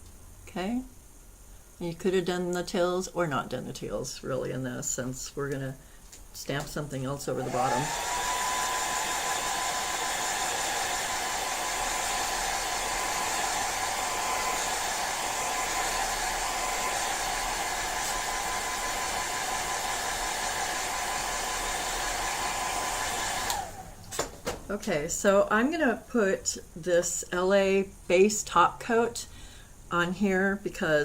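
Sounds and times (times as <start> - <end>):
hair dryer blowing with high whine: 7.3 - 24.6.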